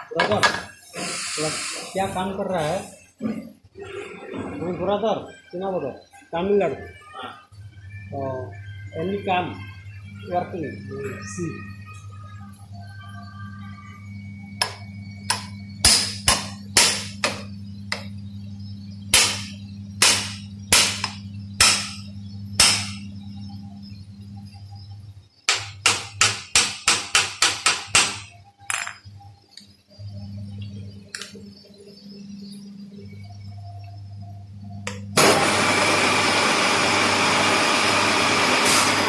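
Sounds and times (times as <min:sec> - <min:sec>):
steady low hum: 0:00.0 - 0:39.0
hammer striking steel: 0:14.6 - 0:18.0, 0:19.1 - 0:23.0, 0:25.5 - 0:28.9.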